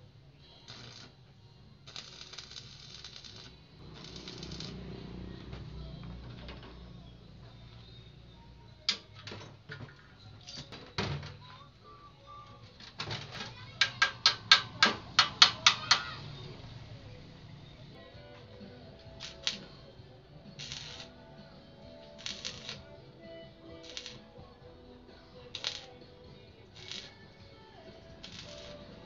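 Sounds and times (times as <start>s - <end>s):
hammer striking metal: 13.8s - 16.1s.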